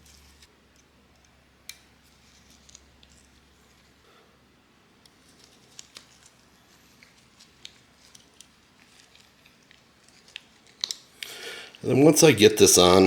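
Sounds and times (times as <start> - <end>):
small parts and tools clicking: 5.0 - 11.8.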